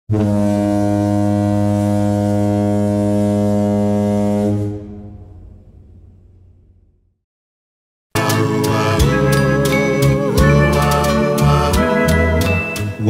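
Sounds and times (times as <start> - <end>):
yacht horn blast: 0.1 - 5.4, 8.2 - 13.0.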